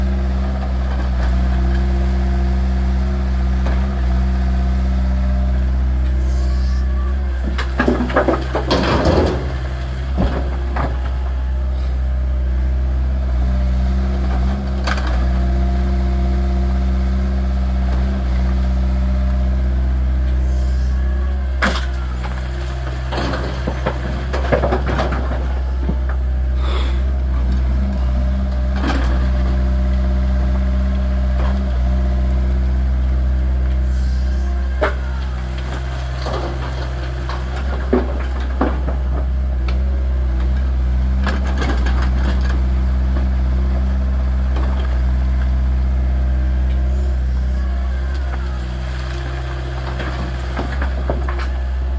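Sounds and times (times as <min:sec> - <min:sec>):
excavator diesel engine running: 0:00.0 - 0:51.9
rattling clatter: 0:07.4 - 0:11.2.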